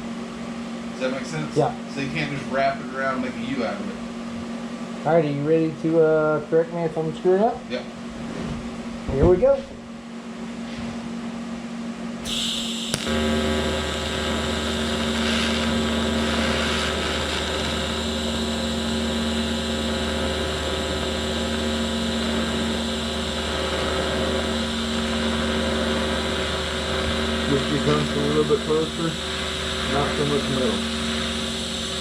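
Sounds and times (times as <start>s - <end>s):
welding arc buzzing and hissing: 12.2s - 32.0s.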